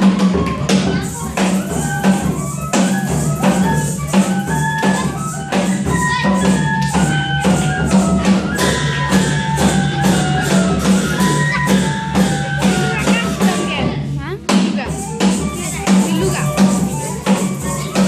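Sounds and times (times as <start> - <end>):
jingling percussion strikes: 0.0 - 18.0
melody of short held notes: 0.1 - 13.9.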